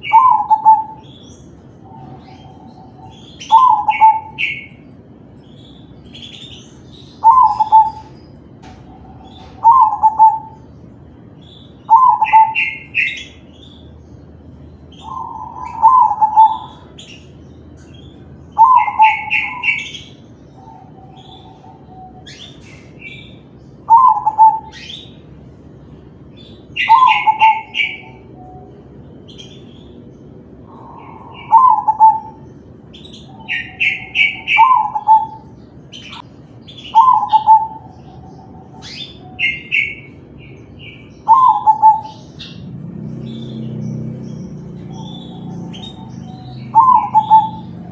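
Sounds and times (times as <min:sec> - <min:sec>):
dove cooing: 0:00.0 - 0:01.2, 0:01.8 - 0:04.8, 0:07.2 - 0:10.7, 0:11.9 - 0:13.4, 0:15.0 - 0:17.0, 0:18.6 - 0:23.2, 0:23.9 - 0:25.0, 0:26.8 - 0:28.8, 0:30.6 - 0:32.6, 0:33.3 - 0:36.2, 0:36.8 - 0:40.2, 0:40.8 - 0:42.5, 0:44.8 - 0:47.9.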